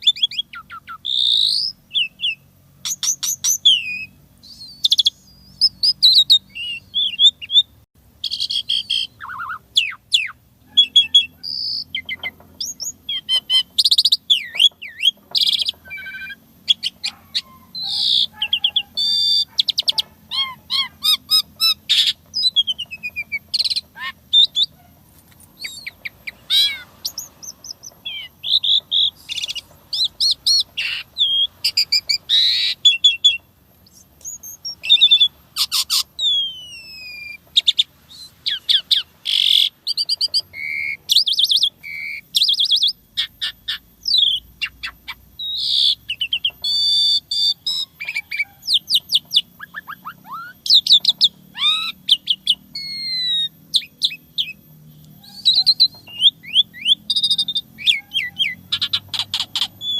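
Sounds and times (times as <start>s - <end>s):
starling singing: 0.0s - 59.9s.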